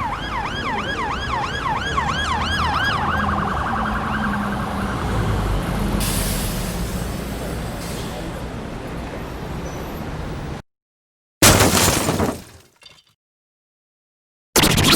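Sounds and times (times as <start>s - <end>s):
emergency siren yelping: 0.0s - 5.6s.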